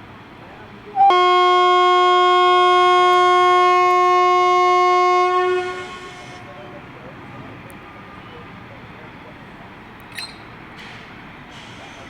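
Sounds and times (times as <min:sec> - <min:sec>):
train horn long blast: 0:01.0 - 0:06.8.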